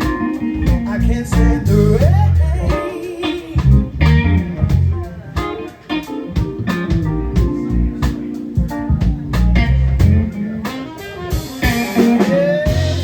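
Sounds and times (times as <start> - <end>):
person singing: 0.0 - 5.8, 10.4 - 13.0
bass guitar: 0.0 - 13.0
drums on a steady beat: 0.0 - 13.0
electric guitar: 0.0 - 13.0.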